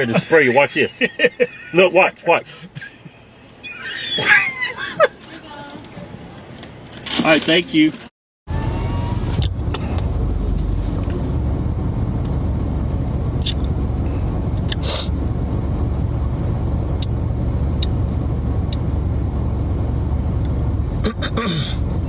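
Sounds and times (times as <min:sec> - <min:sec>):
low vehicle rumble: 0:08.5 - 0:22.0.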